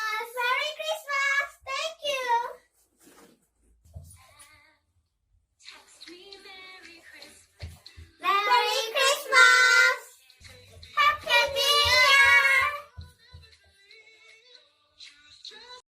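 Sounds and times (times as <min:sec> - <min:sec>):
children singing: 0:08.2 - 0:10.2, 0:10.8 - 0:12.9.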